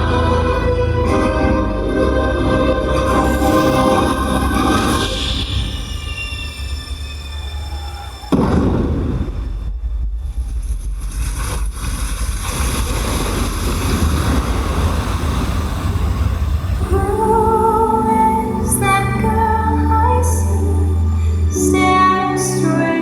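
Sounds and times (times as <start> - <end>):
melodic music: 0.0 - 6.2, 16.9 - 23.0
rushing water with deep rumble: 11.1 - 17.6.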